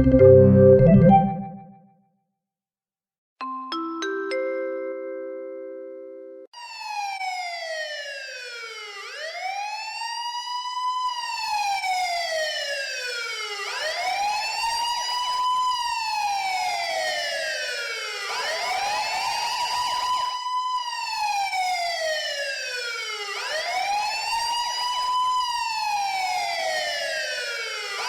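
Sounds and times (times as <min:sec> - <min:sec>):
mallet chime phone tone: 0:00.0 - 0:01.6
siren-style phone ringtone: 0:00.0 - 0:01.8, 0:13.2 - 0:22.3.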